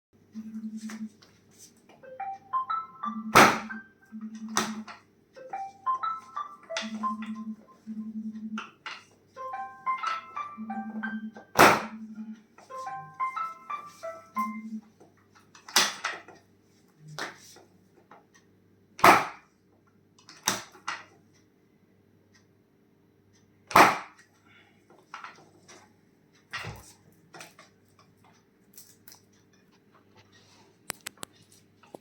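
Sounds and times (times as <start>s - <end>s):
faint low hum: 6.8s - 8.6s.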